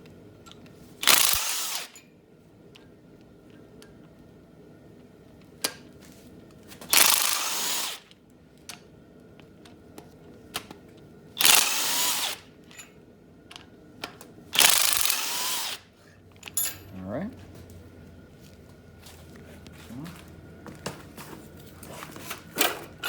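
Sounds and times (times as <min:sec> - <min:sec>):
power tool backing out bolts: 0:00.5 - 0:02.0, 0:06.7 - 0:08.1, 0:11.4 - 0:12.9, 0:14.5 - 0:17.0.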